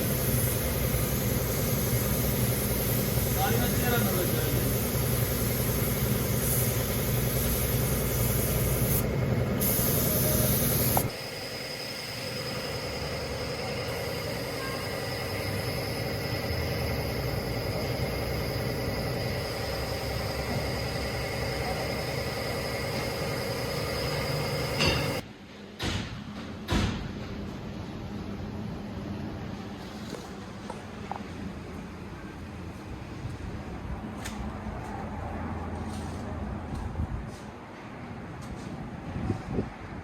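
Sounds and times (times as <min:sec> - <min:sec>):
truck engine rumbling: 0:00.0 - 0:25.2
mechanical hum with high whine: 0:00.0 - 0:40.0.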